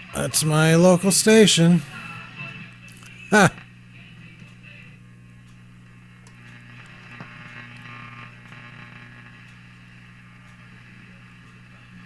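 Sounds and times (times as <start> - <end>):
radio static: 0.0 - 3.6
faint radio broadcast: 0.0 - 12.0
steady low hum: 0.0 - 12.0.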